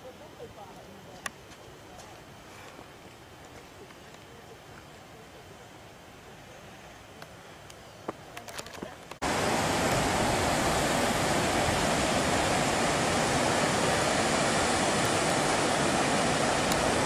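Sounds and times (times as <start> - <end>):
waterfall rushing: 9.2 - 17.0.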